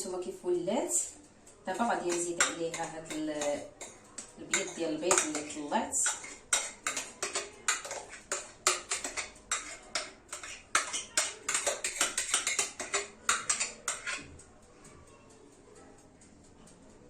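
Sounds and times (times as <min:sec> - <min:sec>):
utensil tapping against bowl: 0:01.7 - 0:14.4.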